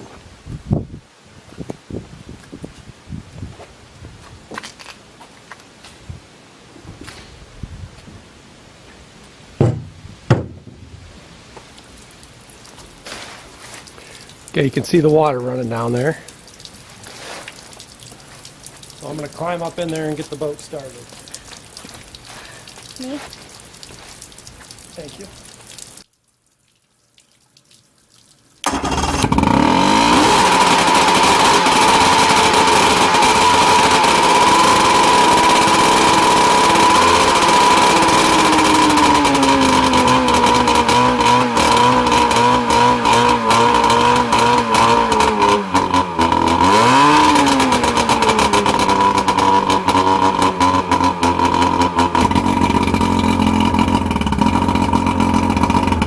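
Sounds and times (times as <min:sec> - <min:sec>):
outboard motor idling: 0:28.6 - 0:56.0.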